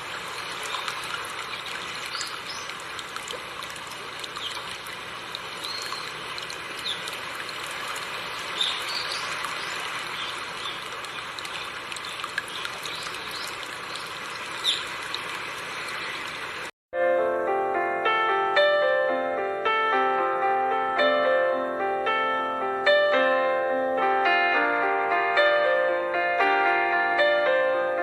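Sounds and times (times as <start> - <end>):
river water over rocks: 0.0 - 16.7
bird chirps: 5.6 - 6.1, 8.6 - 10.8, 11.6 - 15.0.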